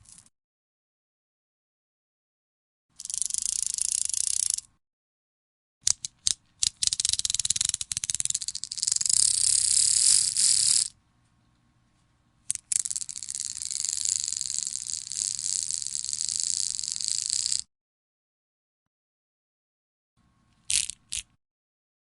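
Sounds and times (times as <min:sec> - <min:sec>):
beads rattling and clicking: 0:12.5 - 0:17.6, 0:20.6 - 0:21.3.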